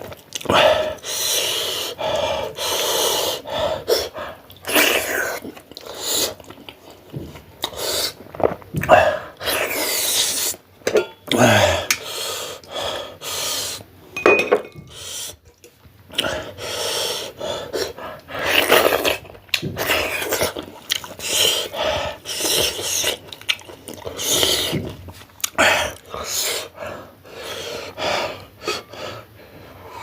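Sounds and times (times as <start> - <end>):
person chewing food: 0.0 - 1.0, 4.3 - 12.8, 17.7 - 26.7
plate clinking: 10.9 - 11.2, 14.2 - 14.9.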